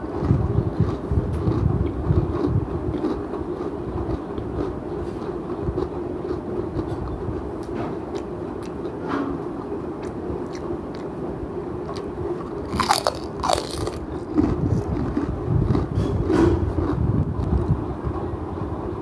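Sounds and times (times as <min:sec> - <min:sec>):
person chewing food: 0:00.2 - 0:09.0, 0:09.6 - 0:11.2, 0:11.8 - 0:17.7
crisp crunches: 0:12.7 - 0:15.8.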